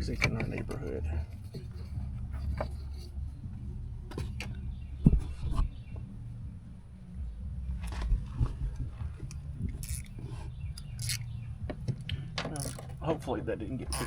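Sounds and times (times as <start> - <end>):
sharp clicks and knocks: 0.0 - 0.9, 7.8 - 13.0
muffled bass-heavy car stereo music: 0.0 - 14.0.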